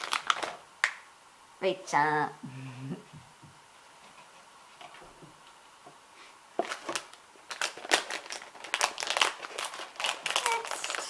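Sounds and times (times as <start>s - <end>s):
plastic packaging tearing and crinkling: 0.0s - 0.7s, 6.6s - 11.0s.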